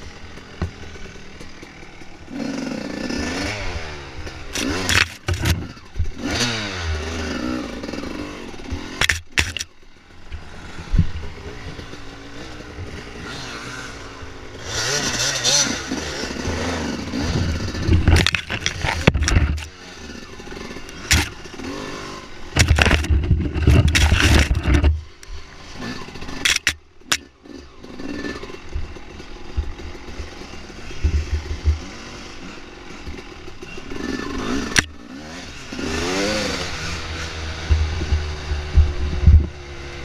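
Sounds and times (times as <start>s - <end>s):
dirt bike engine revving: 0.0s - 40.0s
bike clattering over rough ground: 4.5s - 6.2s, 8.7s - 9.8s, 17.1s - 19.8s, 20.8s - 21.8s, 22.5s - 25.2s, 26.3s - 27.3s.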